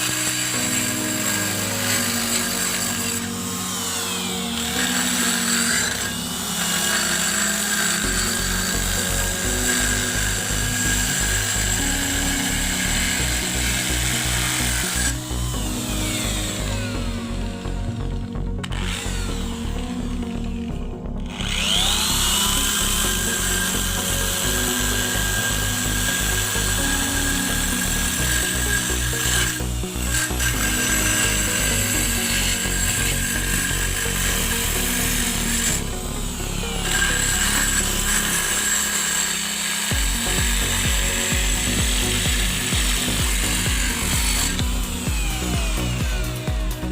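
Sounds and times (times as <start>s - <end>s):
small electric drill motor whining: 0.0s - 46.9s
background music with bass beat: 39.9s - 46.9s.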